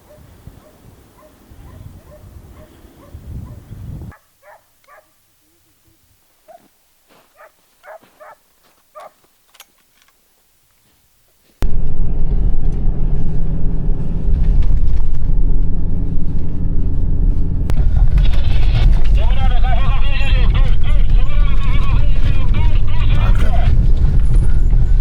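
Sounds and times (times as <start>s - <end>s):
loud low rumble: 11.6s - 25.0s.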